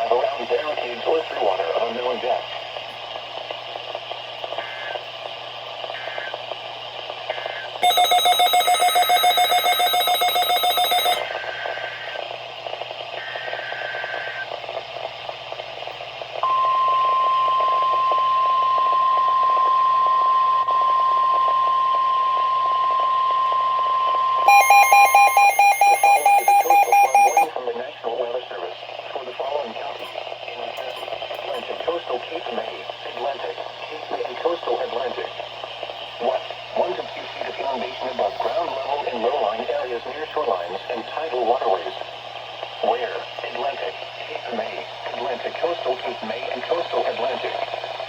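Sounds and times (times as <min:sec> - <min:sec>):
digital code bursts: 0:07.8 - 0:11.3, 0:24.5 - 0:27.5
pulsed beeping alarm: 0:07.8 - 0:11.5, 0:16.4 - 0:27.5
steady weather alert tone: 0:24.5 - 0:27.5.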